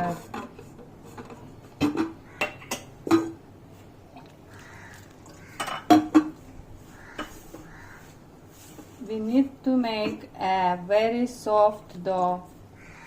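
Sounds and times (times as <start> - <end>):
metal utensils and dishes clinking: 0.0 - 3.4, 5.4 - 6.4, 7.2 - 7.5.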